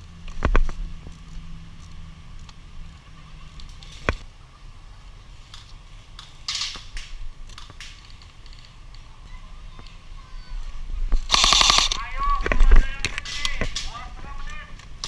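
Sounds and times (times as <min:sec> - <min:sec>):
loud crack: 0:11.3 - 0:12.1.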